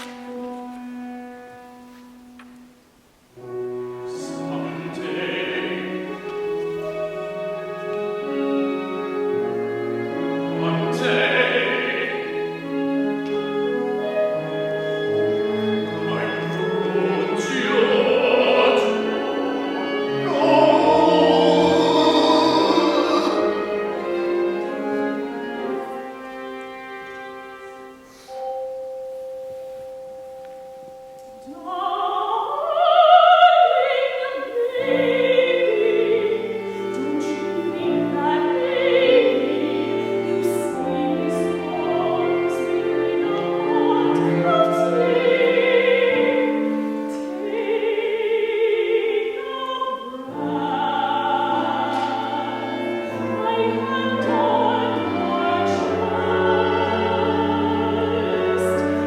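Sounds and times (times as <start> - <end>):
operatic singing with vibrato: 3.8 - 13.1, 14.4 - 25.6, 31.4 - 59.0
instrumental accompaniment: 12.1 - 32.1.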